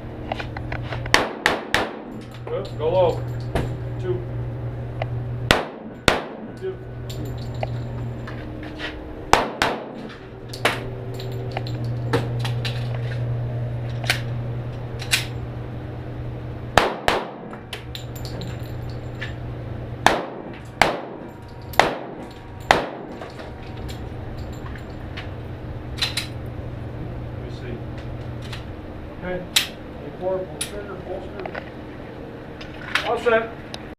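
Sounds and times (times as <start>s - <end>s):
pistol shots: 1.1s - 2.1s, 5.5s - 6.5s, 9.3s - 10.8s, 16.8s - 17.5s, 20.0s - 23.1s.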